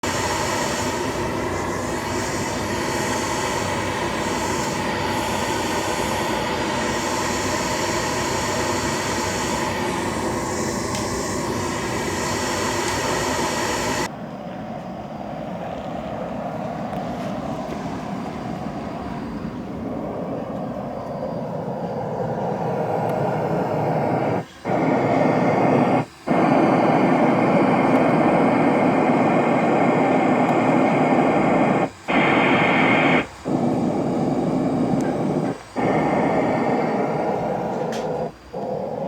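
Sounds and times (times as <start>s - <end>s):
rushing test noise from speakers: 22.5s - 39.0s.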